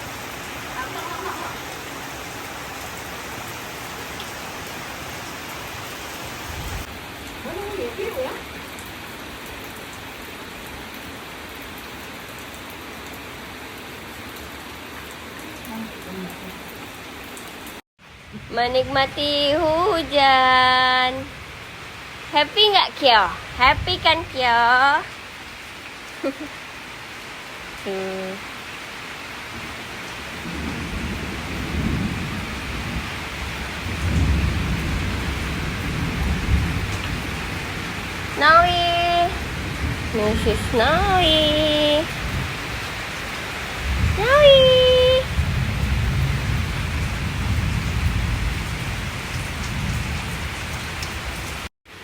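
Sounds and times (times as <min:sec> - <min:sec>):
steady rain hiss: 0:00.0 - 0:52.0
raindrops ticking: 0:00.1 - 0:03.5.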